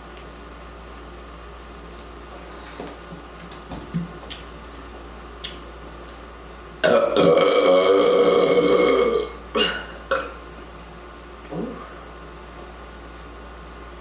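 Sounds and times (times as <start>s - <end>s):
woman burping: 6.8s - 10.4s.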